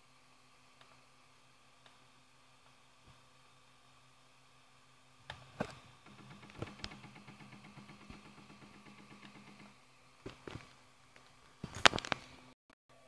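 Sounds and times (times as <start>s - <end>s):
printer stepper motor humming: 5.4s - 10.6s
mechanical clicks: 6.0s - 9.8s.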